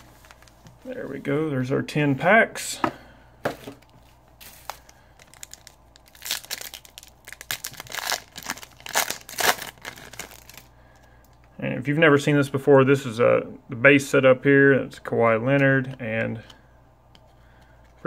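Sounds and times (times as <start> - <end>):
wrapper crinkling and tearing: 4.4 - 10.7.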